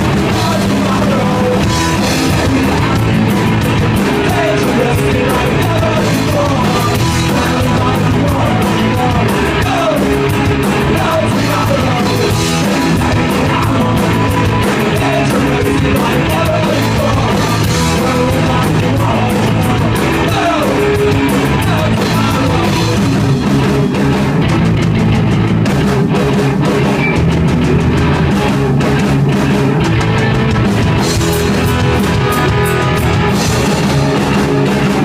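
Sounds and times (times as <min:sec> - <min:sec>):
person shouting singing: 0:00.0 - 0:03.1, 0:04.0 - 0:23.1
punk rock band playing: 0:00.0 - 0:35.0.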